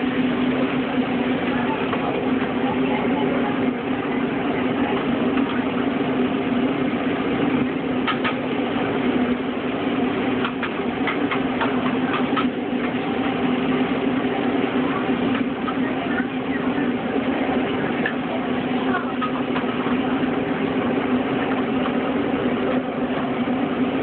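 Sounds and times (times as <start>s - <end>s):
steady motor hum: 0.0s - 24.0s.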